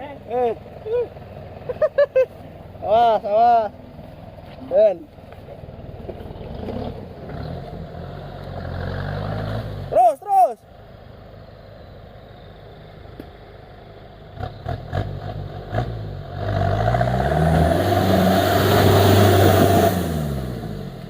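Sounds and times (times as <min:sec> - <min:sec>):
off-road engine revving: 0:05.5 - 0:10.3, 0:14.2 - 0:21.0.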